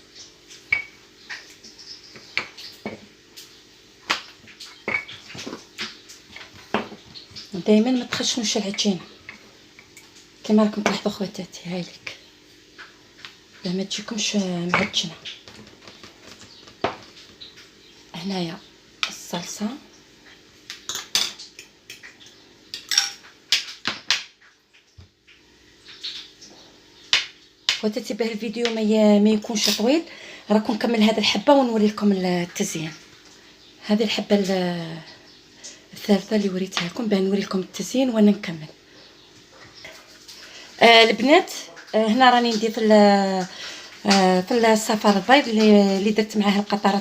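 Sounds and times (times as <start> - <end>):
utensils clinking against dishes: 20.8 - 23.3, 29.6 - 30.0.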